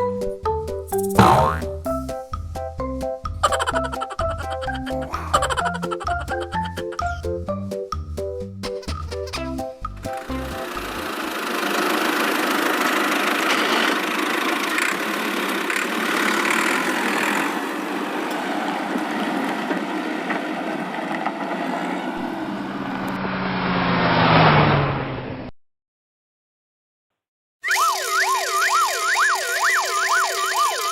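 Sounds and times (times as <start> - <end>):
vehicle engine running: 10.1 - 17.4.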